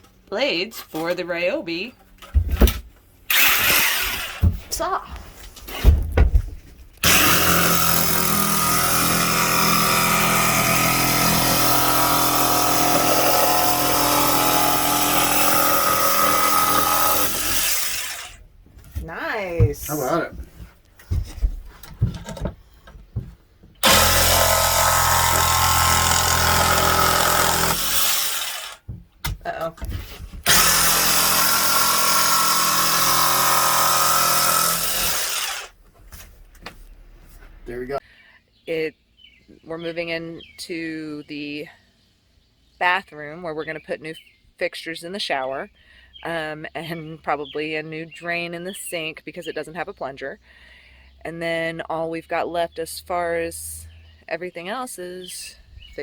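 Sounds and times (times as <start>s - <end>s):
jigsaw cutting a board: 3.3s - 4.5s, 7.0s - 18.4s, 23.8s - 28.8s, 30.4s - 35.8s.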